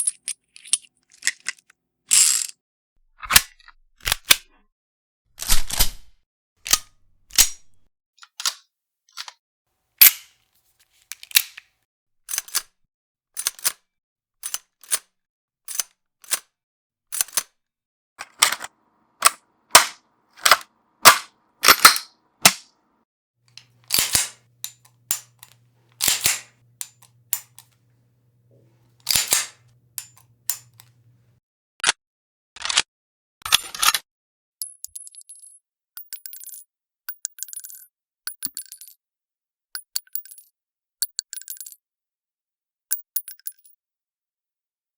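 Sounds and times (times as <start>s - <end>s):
gun reloading clicks: 10.0s - 10.3s, 11.1s - 11.6s, 18.2s - 22.7s, 23.6s - 31.3s
gun action rattling: 18.2s - 22.6s, 23.6s - 31.3s.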